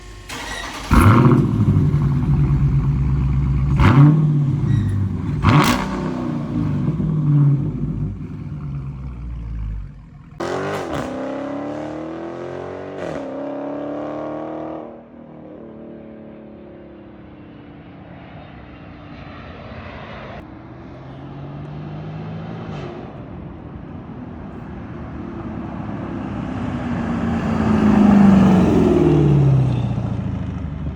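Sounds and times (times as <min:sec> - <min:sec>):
car engine starting and idling: 0:00.0 - 0:12.3
engine revving: 0:00.0 - 0:14.9, 0:26.9 - 0:29.9.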